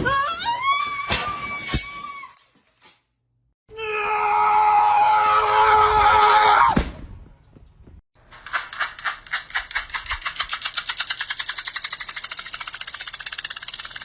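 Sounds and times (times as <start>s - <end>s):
loud long scream: 3.7s - 6.8s.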